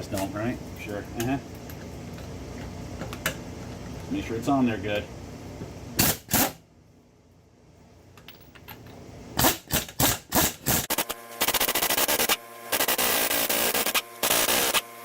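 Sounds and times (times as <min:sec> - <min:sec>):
air impact wrench rattling: 0:09.4 - 0:12.3.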